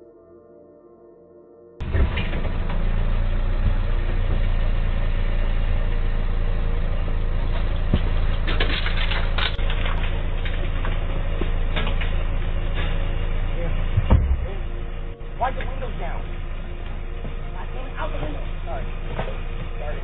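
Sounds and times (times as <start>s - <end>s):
knocks and rattles: 1.8s - 4.9s, 7.3s - 14.7s
car engine idling: 1.8s - 20.0s.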